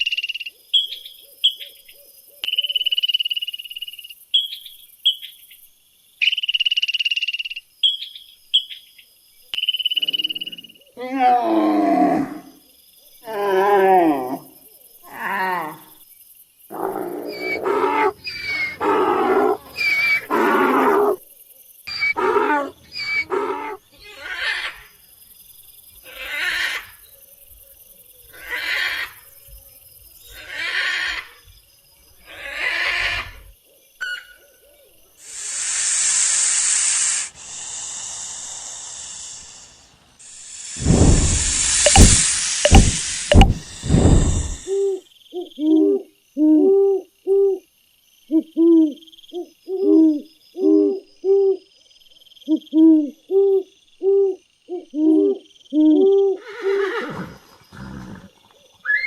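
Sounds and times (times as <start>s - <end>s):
animal calls with wavering pitch: 16.7s - 21.2s, 21.9s - 24.8s
hissing noise: 35.2s - 44.8s.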